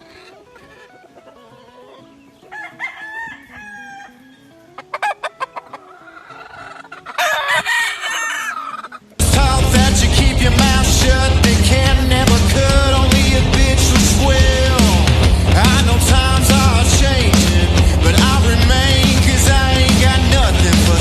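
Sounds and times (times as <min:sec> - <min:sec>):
chickens clucking: 0:00.0 - 0:21.0
rooster crowing: 0:02.4 - 0:05.2, 0:06.0 - 0:09.0
loud rock music: 0:09.2 - 0:21.0.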